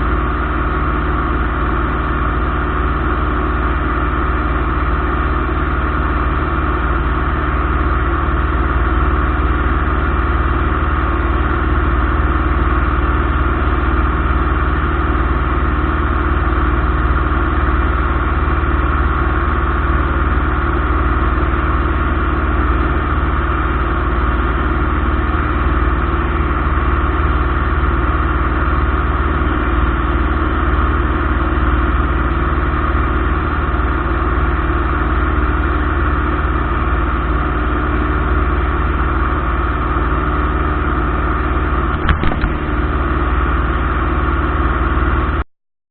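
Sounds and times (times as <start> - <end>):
light aircraft engine droning: 41.9 - 43.3.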